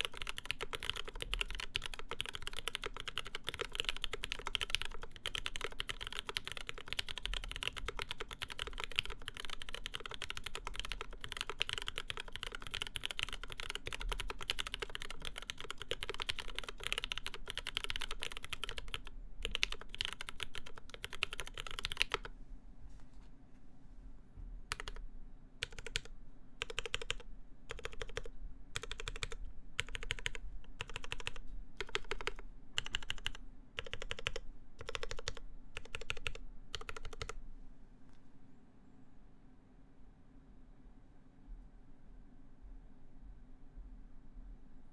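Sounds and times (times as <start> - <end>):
fast typing on mechanical keyboard: 0.0 - 22.3, 24.7 - 25.0, 25.6 - 37.4.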